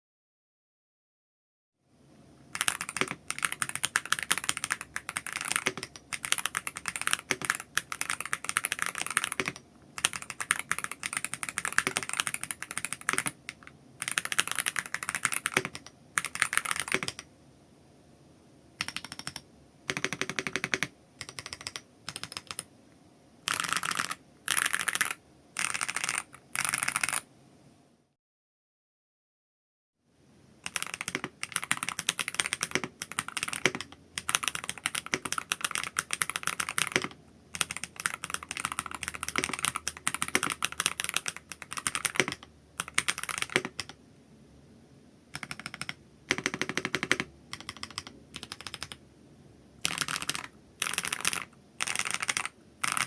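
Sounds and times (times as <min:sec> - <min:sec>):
keyboard typing: 0:02.5 - 0:17.3, 0:18.8 - 0:22.7, 0:23.5 - 0:27.3, 0:30.6 - 0:44.0, 0:45.3 - 0:49.0, 0:49.8 - 0:53.0.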